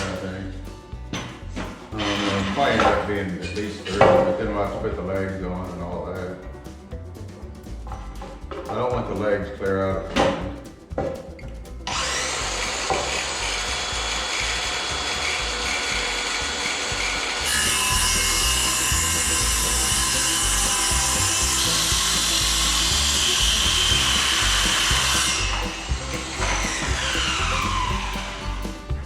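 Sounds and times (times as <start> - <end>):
power tool cutting wood: 1.6 - 4.3, 11.9 - 29.0.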